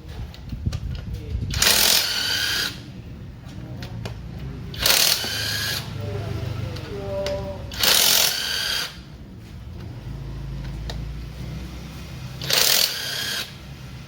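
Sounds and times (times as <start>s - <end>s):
power tool spinning: 1.5s - 2.8s, 4.7s - 9.2s, 11.2s - 14.0s.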